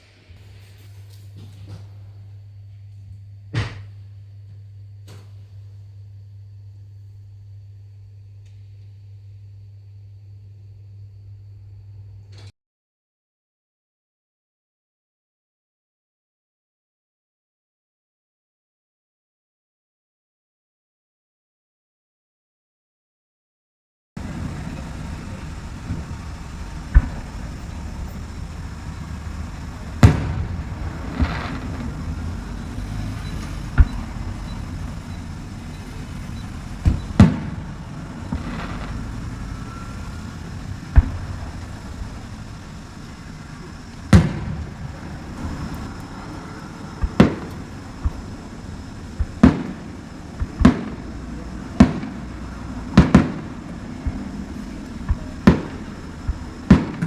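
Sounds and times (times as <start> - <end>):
fireworks bursting: 0.0 - 7.4, 24.2 - 57.0
steady low rumble: 0.0 - 12.5, 24.2 - 57.0.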